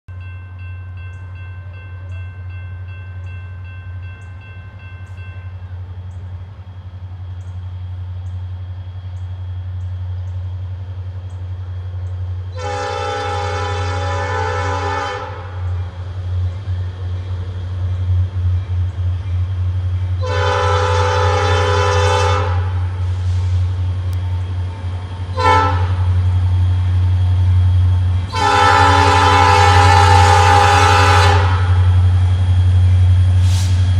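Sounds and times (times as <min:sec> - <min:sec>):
locomotive engine rumble: 0:00.2 - 0:33.9
locomotive horn blasts: 0:12.5 - 0:15.8, 0:20.2 - 0:23.0, 0:25.3 - 0:26.2, 0:28.3 - 0:32.0.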